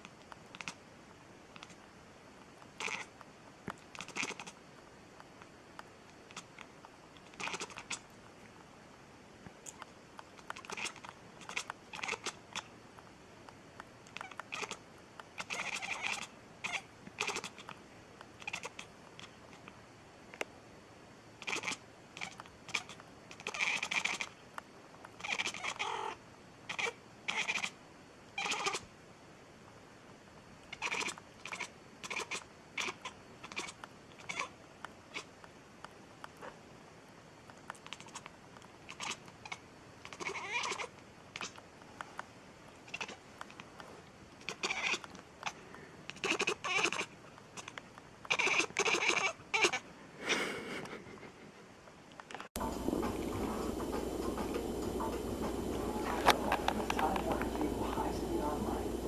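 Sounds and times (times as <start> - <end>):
cat vocalizing: 2.8 - 3.1, 3.9 - 4.6, 7.3 - 8.1, 10.4 - 12.7, 14.1 - 14.8, 15.4 - 17.7, 18.4 - 19.6, 21.4 - 24.4, 25.2 - 27.8, 28.4 - 28.8, 30.7 - 35.3, 37.8 - 41.6, 42.8 - 43.7, 44.4 - 49.8.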